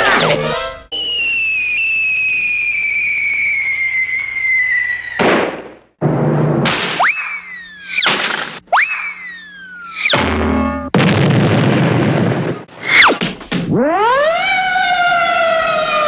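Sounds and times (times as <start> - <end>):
falling whistle: 0.1 - 5.2, 7.0 - 8.1, 8.7 - 10.2
swooping whistle: 0.1 - 5.2, 7.0 - 8.1, 8.7 - 10.2
cartoon explosion burst: 5.2 - 5.7, 10.0 - 13.8.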